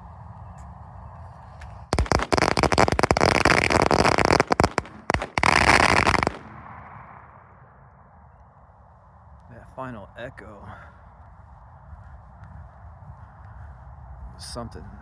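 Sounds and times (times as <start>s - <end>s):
firecrackers banging: 1.9s - 7.4s.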